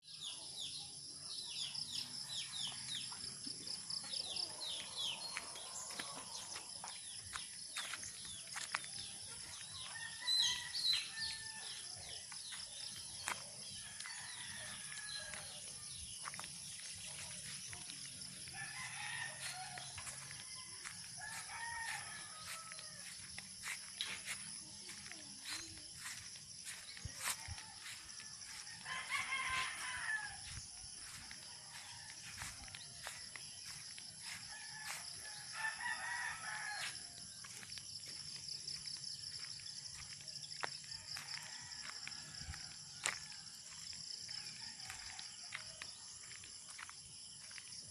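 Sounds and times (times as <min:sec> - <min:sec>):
roosters crowing: 0:18.5 - 0:23.2, 0:26.6 - 0:33.1, 0:34.3 - 0:37.2.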